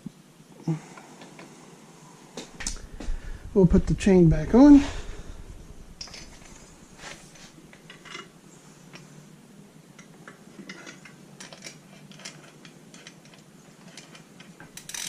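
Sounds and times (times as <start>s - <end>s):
bicycle chain metallic clinks: 14.8s - 15.0s.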